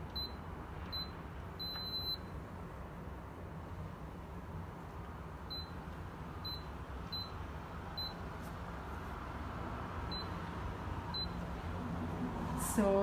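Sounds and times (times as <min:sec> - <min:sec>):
keypad beeping: 0:00.1 - 0:02.2.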